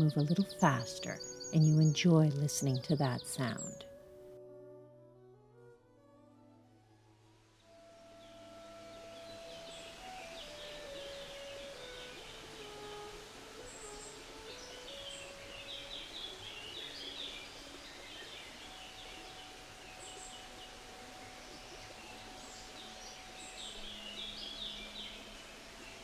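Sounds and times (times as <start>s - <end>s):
songbirds singing: 0.0s - 4.0s, 8.1s - 26.0s
flowing brook: 7.9s - 26.0s.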